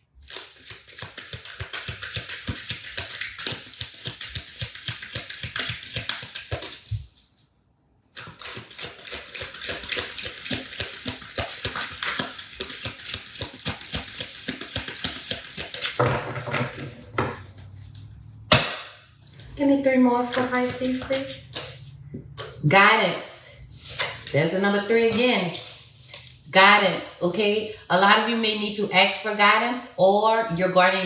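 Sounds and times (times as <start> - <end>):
cards being shuffled: 0.2 - 7.4, 8.1 - 18.3, 20.2 - 22.5, 23.8 - 24.4.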